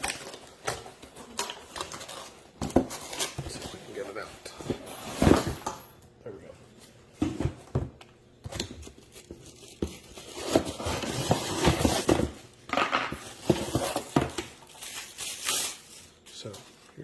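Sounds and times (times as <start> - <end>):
packaging rustling: 8.5 - 17.0.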